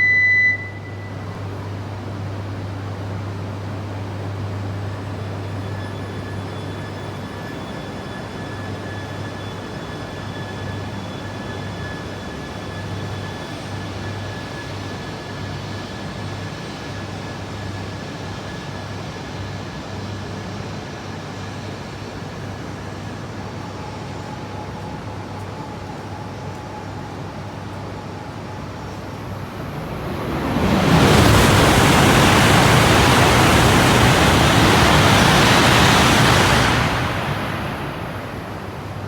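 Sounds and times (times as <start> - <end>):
train rumble with high whine: 0.0 - 39.0.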